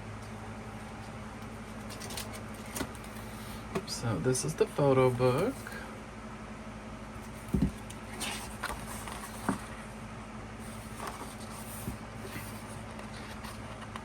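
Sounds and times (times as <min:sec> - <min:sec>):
paper pages rustling: 0:00.9 - 0:03.7, 0:07.2 - 0:09.8, 0:10.6 - 0:14.0
dull bump: 0:07.4 - 0:07.8.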